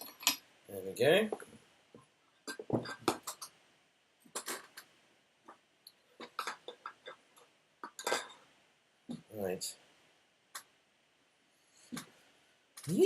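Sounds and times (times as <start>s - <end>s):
metal tools clattering on workbench: 2.5s - 3.5s, 7.8s - 8.4s.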